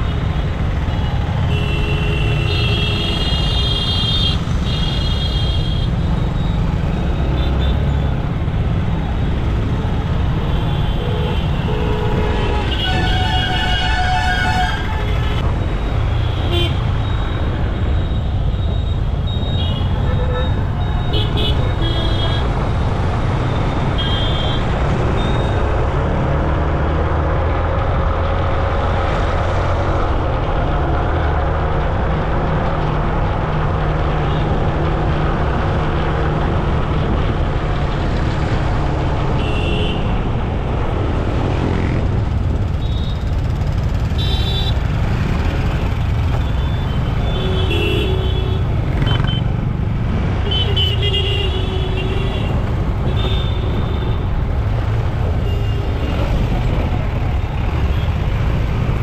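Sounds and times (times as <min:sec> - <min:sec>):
traffic rumble and road noise: 0:00.0 - 0:59.0.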